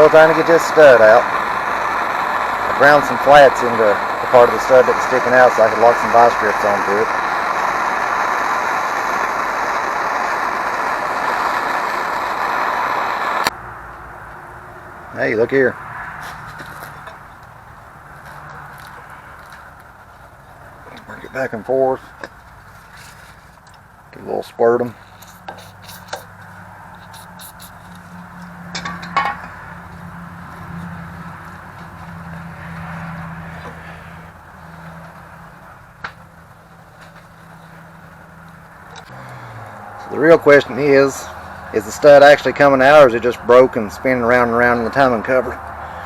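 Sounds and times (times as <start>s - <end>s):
gas torch flame hissing: 0.0s - 13.6s, 24.2s - 37.8s, 38.9s - 44.0s
steady low hum: 0.0s - 15.2s.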